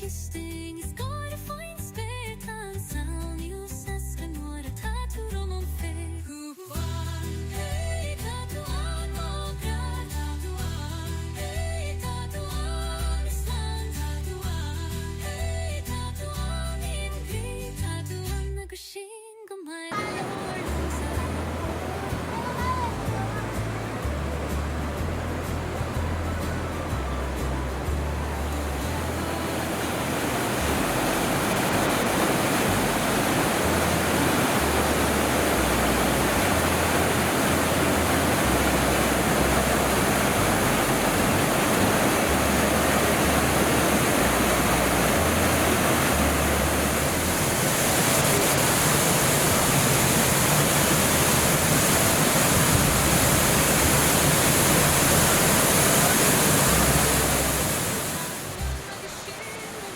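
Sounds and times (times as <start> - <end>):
waterfall rushing: 19.9 - 59.9.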